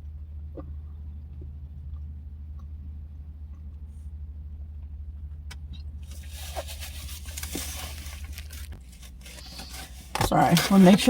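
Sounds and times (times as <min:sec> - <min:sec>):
low hum: 0:00.0 - 0:11.0
packaging crinkling: 0:06.0 - 0:11.0.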